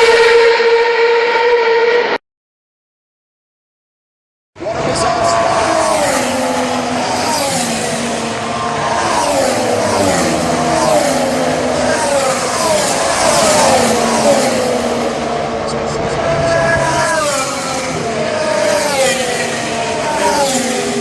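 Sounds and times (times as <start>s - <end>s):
racing car engines: 4.6s - 21.0s.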